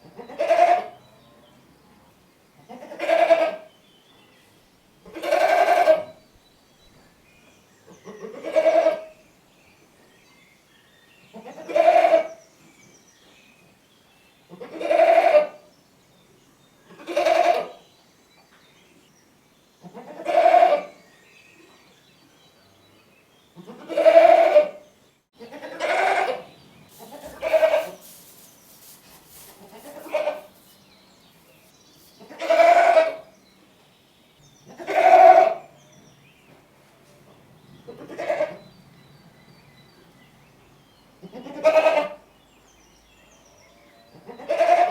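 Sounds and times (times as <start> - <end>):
goat bleating: 2.7 - 3.6, 5.2 - 6.1, 23.6 - 24.8, 25.4 - 26.4, 27.0 - 28.0, 29.6 - 30.5, 32.3 - 33.2, 34.8 - 35.6, 38.0 - 38.6, 41.3 - 42.2, 44.3 - 44.9.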